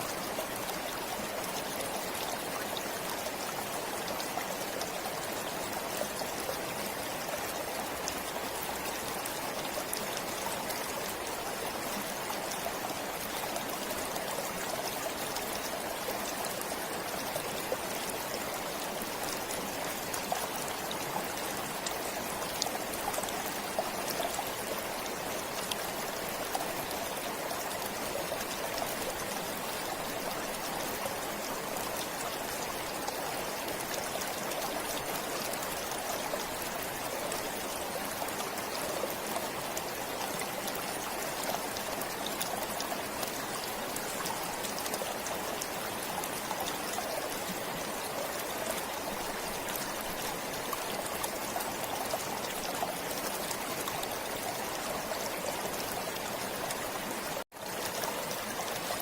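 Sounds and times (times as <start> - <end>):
stream flowing: 0.0 - 59.0.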